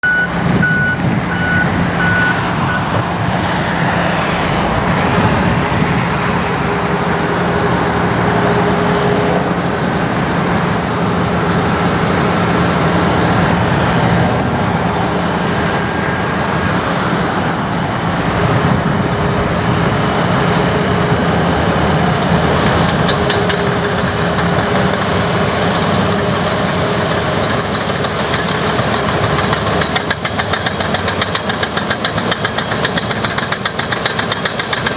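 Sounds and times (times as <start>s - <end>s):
high beeps: 0.0s - 2.9s
diesel engines running: 0.0s - 34.9s.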